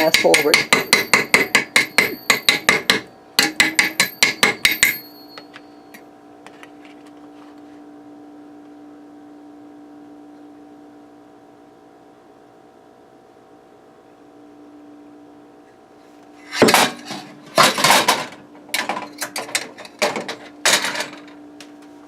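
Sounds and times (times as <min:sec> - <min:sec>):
knocking on metal cake pan: 0:00.0 - 0:05.0.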